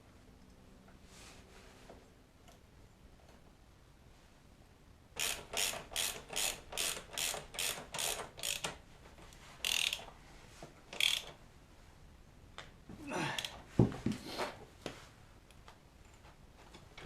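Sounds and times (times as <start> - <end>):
ratchet wrench strokes: 5.2 - 8.8, 9.6 - 10.1, 10.9 - 11.3.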